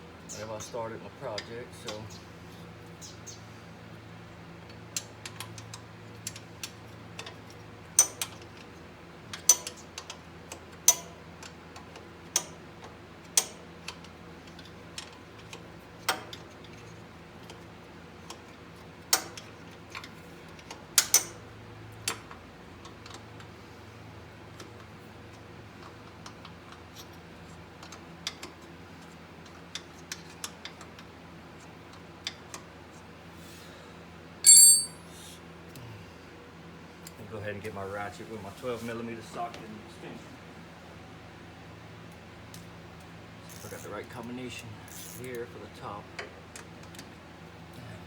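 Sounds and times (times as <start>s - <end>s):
wrench clinking on a bolt: 34.5s - 35.0s.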